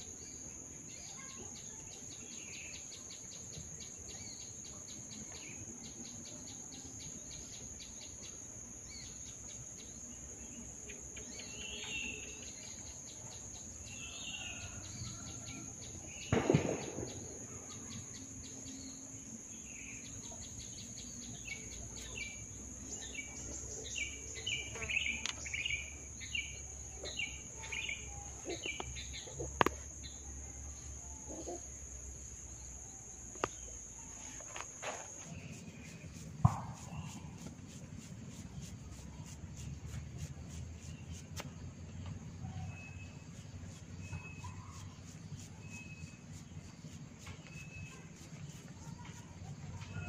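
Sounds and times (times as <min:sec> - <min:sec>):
sharp crack: 0:16.2 - 0:17.5
loud thump: 0:16.3 - 0:17.3.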